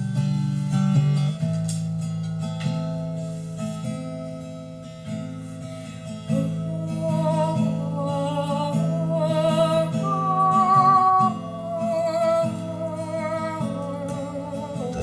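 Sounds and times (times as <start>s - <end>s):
strummed acoustic guitar: 0.0s - 15.0s
person singing with vibrato: 6.3s - 15.0s.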